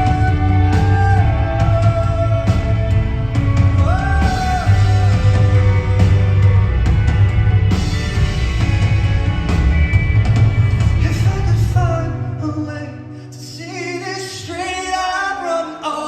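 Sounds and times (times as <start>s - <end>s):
drum hits: 0.0s - 11.9s
heavy bass: 0.0s - 13.1s
live rock band playing: 0.0s - 13.1s.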